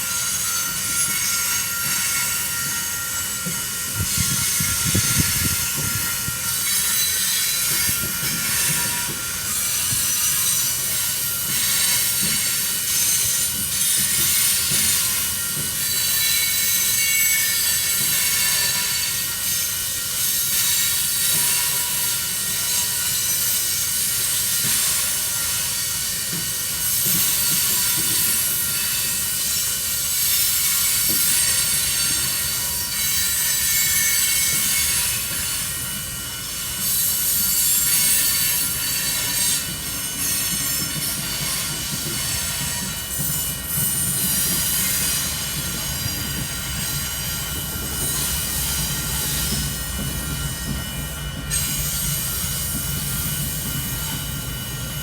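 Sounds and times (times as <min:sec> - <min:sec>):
freight cars rolling on rails: 0:00.0 - 0:55.0.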